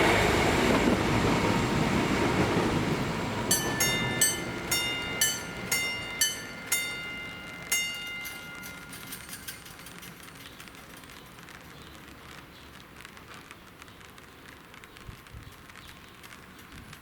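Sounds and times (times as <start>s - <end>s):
warning bell strike: 3.5s - 10.5s
faint crackling ticks: 8.7s - 17.0s.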